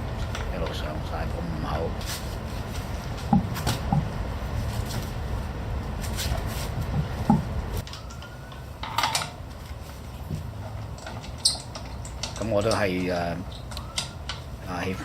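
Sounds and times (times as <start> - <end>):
low background rumble: 0.0 - 15.0
metal clinks of lug nuts: 7.9 - 9.4, 10.6 - 14.5.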